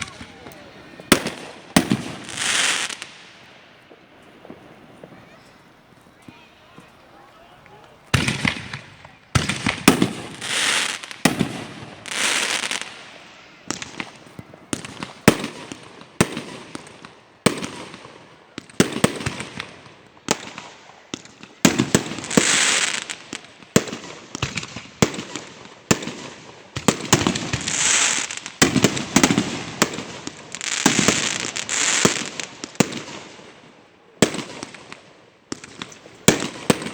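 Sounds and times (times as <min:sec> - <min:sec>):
fireworks hissing: 0:00.0 - 0:15.5
fireworks bangs: 0:00.0 - 0:36.9.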